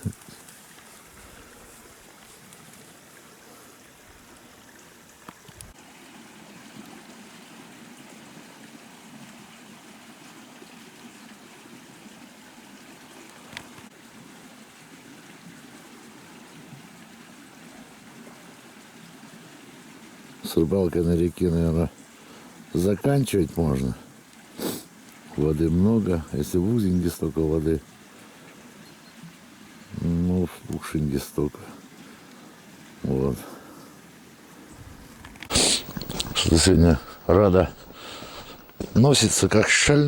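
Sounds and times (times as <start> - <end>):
river water rushing: 30.6 - 40.0
faint clicks: 35.0 - 39.0.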